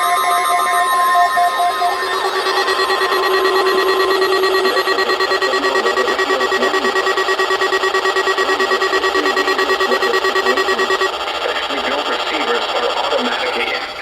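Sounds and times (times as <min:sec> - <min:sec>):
steady tone: 0:00.0 - 0:11.2
pulsing electronic alert: 0:00.0 - 0:11.3.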